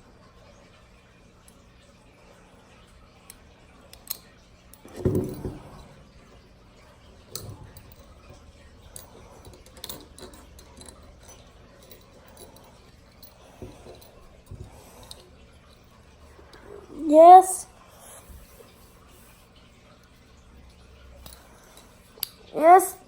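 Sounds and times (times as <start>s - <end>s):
handling noise: 4.9s - 6.5s
metal handcuffs clicking and rattling: 7.3s - 15.8s.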